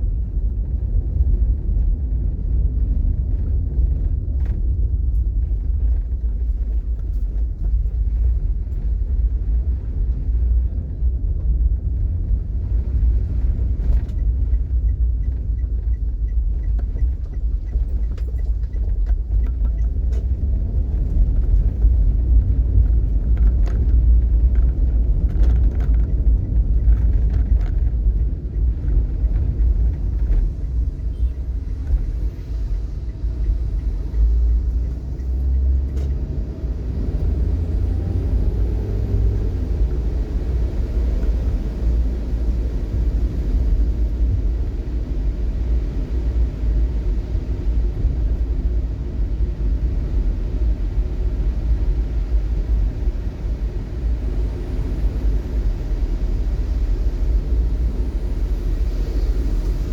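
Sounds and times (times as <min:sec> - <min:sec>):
car driving rumble: 0:00.0 - 0:59.9.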